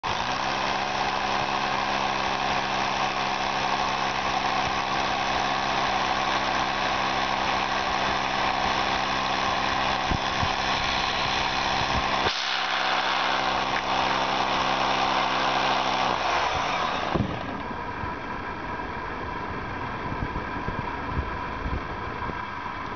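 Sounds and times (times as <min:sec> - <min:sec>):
engine running evenly: 0:00.0 - 0:22.9
arc welding crackle: 0:00.1 - 0:17.3.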